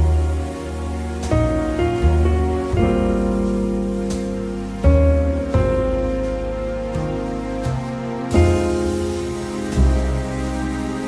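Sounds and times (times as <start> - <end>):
soft slow instrumental music: 0.0 - 11.0.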